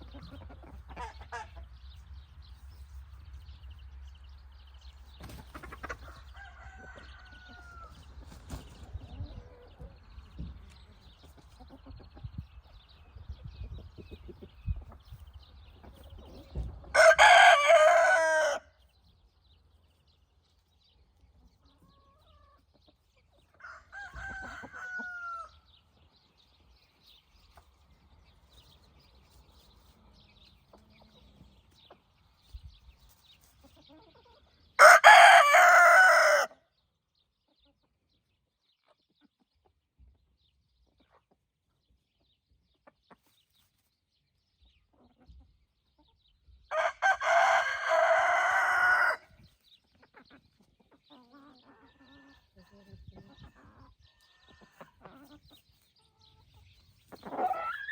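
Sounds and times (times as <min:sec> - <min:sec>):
chickens scratching and clucking: 0:00.0 - 0:36.1, 0:37.5 - 0:57.9
rooster crowing: 0:06.4 - 0:07.9, 0:16.9 - 0:18.7, 0:23.6 - 0:25.5, 0:34.8 - 0:36.5, 0:46.7 - 0:49.3.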